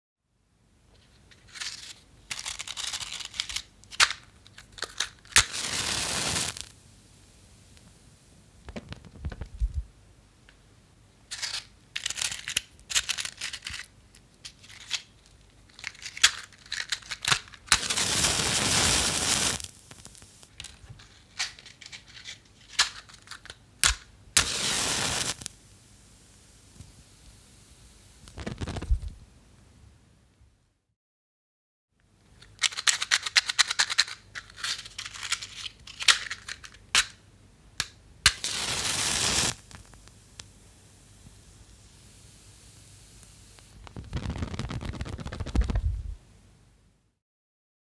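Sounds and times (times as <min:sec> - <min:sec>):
match flaring with a hiss: 0:05.3 - 0:08.4, 0:17.7 - 0:20.6, 0:23.8 - 0:29.3, 0:38.2 - 0:46.2.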